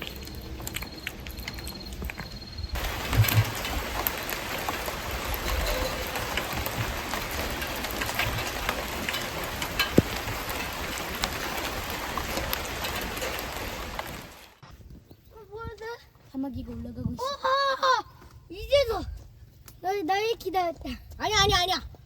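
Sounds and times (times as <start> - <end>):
wood fire crackling and popping: 0.0 - 14.6
fish sizzling on grill: 2.7 - 14.6.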